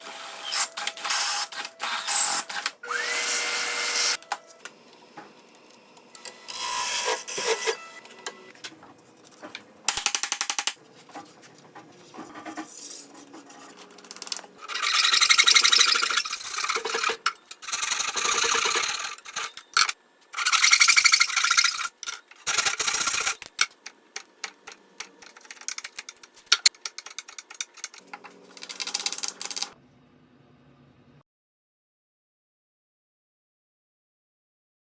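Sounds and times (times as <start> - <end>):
power tool whine: 0.0 - 4.2, 6.2 - 8.5
tools scraping and cutting wood: 6.2 - 9.7, 10.8 - 29.8.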